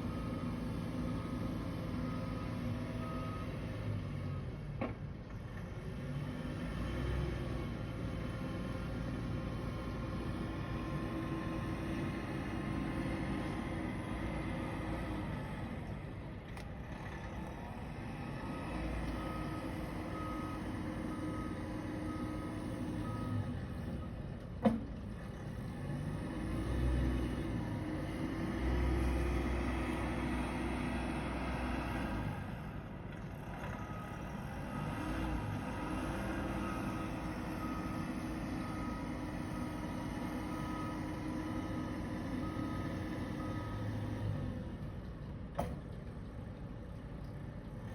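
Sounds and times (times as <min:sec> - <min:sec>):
truck reversing alarm beeping: 0:00.0 - 0:04.7, 0:17.6 - 0:24.4, 0:33.6 - 0:44.9
engine hum: 0:00.0 - 0:47.9.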